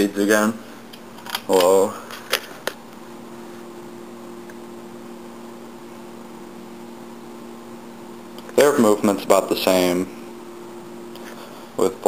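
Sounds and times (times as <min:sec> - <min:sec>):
fan motor humming: 0:00.0 - 0:12.0
soft rush of air: 0:01.8 - 0:12.0.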